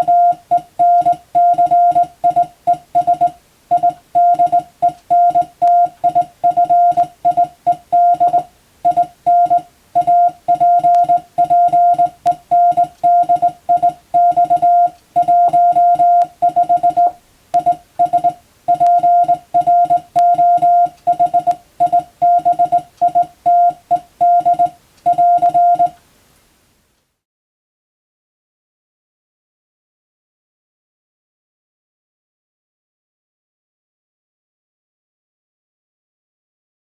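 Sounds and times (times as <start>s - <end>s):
morse code beeps: 0.0s - 26.0s.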